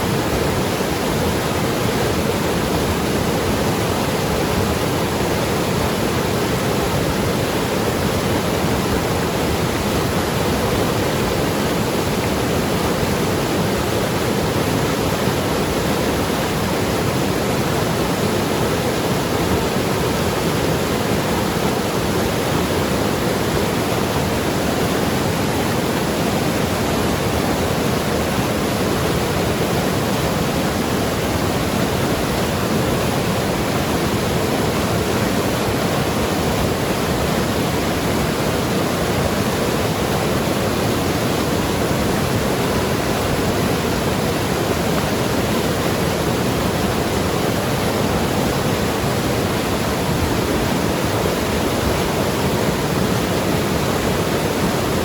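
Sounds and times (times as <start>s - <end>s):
river flowing over rocks: 0.0s - 55.0s.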